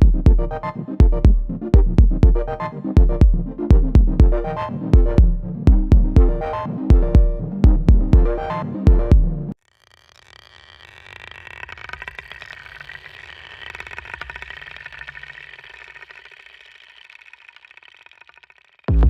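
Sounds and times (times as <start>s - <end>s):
rapid mechanical clicking: 9.5s - 19.0s.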